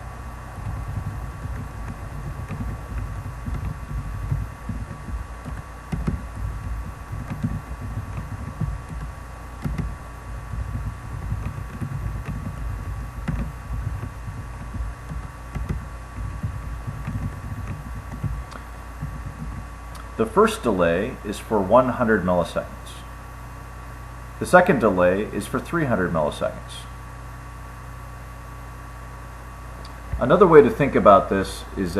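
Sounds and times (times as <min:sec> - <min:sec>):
electrical hum: 0:00.0 - 0:31.9
thin high whine: 0:00.0 - 0:31.9
typing on computer keyboard: 0:00.6 - 0:19.7.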